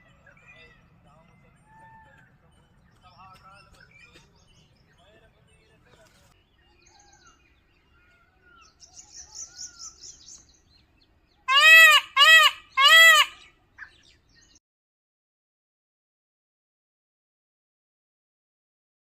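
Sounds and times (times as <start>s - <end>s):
faint high bird chirps: 0.0s - 11.5s
loud rising and falling bird calls: 6.8s - 14.5s.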